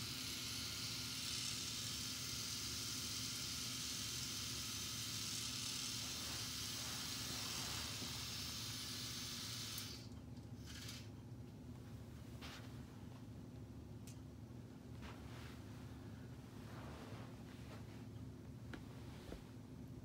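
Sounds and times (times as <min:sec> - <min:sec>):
toy gears whirring: 0:00.0 - 0:11.1
low steady hum: 0:00.0 - 0:20.0.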